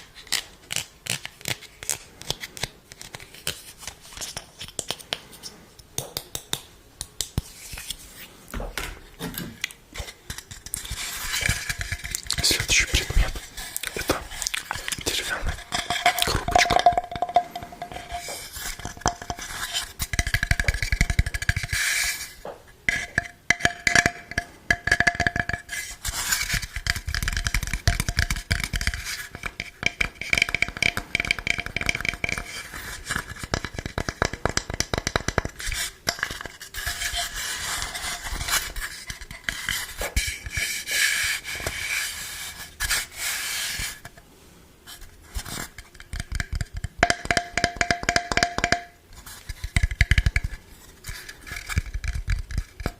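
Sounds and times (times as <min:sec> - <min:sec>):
tapping and scratching on hard objects: 0:08.6 - 0:41.9, 0:45.0 - 0:52.9.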